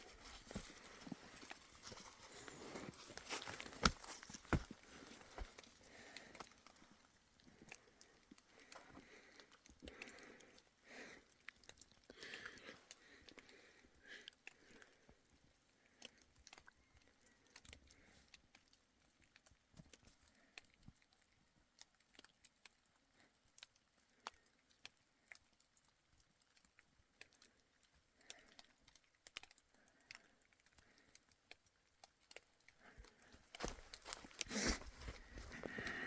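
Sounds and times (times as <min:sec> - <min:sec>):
faint irregular clicks: 0:00.0 - 0:36.0.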